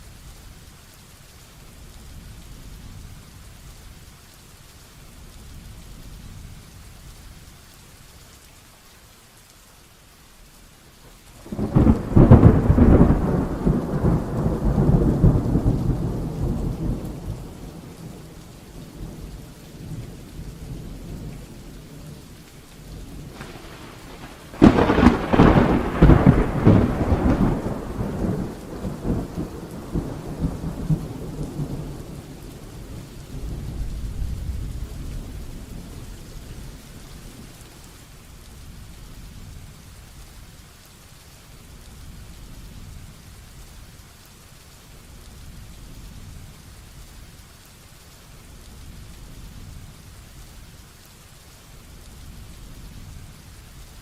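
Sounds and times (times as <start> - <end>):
heavy rain falling: 0.0 - 54.0
thunder claps rumbling: 11.4 - 37.9.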